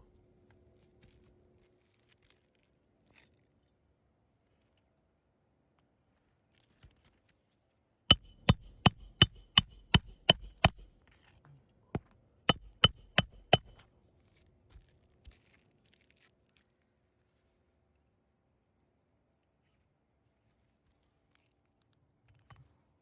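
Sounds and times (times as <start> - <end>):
hammer striking metal: 8.1 - 11.4, 12.5 - 13.8.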